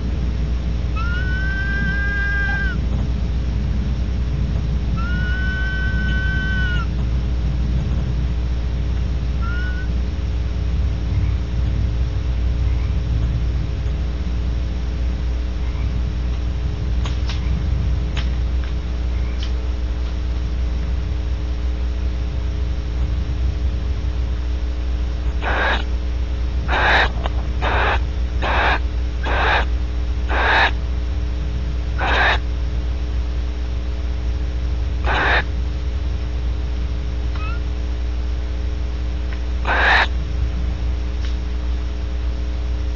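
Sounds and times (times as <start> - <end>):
electrical hum: 0.0 - 42.9
owl wheezing hisses: 1.0 - 2.8, 5.0 - 6.9, 9.4 - 9.9, 25.4 - 25.9, 26.7 - 29.7, 30.3 - 30.8, 32.0 - 32.4, 35.0 - 35.5, 39.6 - 40.1.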